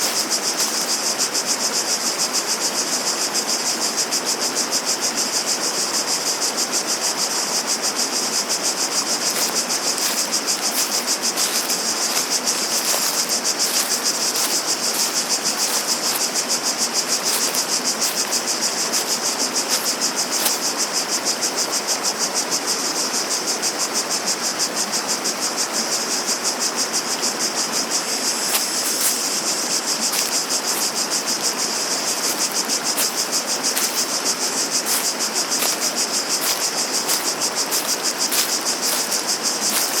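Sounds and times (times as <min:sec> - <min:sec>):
running water: 0:00.0 - 0:02.4, 0:07.6 - 0:21.8, 0:27.0 - 0:40.0
cicadas buzzing: 0:00.0 - 0:40.0.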